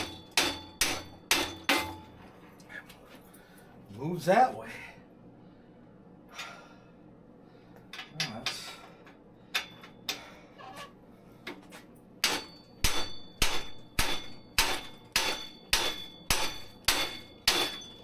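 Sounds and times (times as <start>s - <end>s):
hammer striking metal: 0.0s - 2.2s, 12.2s - 18.0s.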